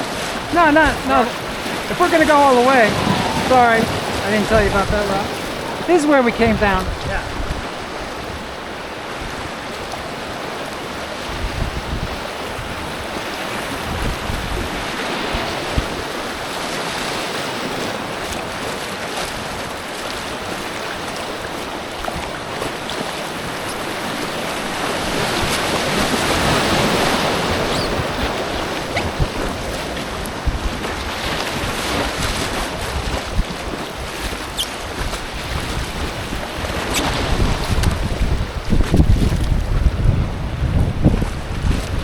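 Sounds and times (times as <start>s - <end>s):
wind buffeting microphone: 0.0s - 20.9s, 21.5s - 42.0s
water rushing: 0.0s - 42.0s.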